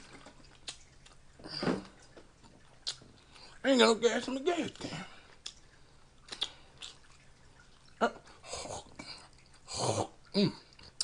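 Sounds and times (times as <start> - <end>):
breathy slurping: 6.2 - 11.0
mouth clicks: 6.3 - 7.0.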